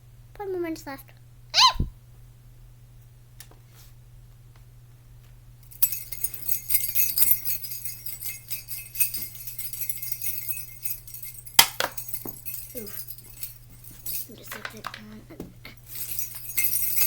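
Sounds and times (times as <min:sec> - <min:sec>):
jingle bells shaken: 0:05.6 - 0:17.0.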